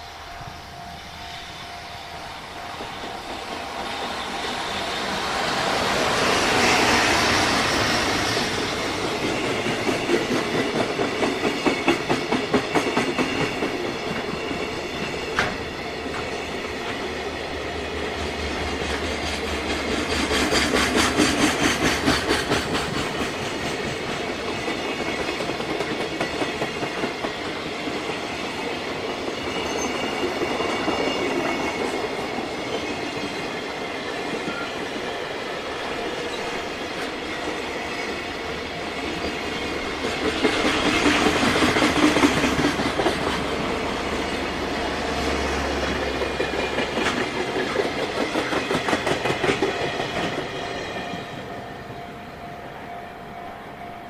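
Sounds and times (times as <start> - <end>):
train wheels clattering over rail joints: 2.7 - 35.0, 39.1 - 44.6, 45.5 - 50.6.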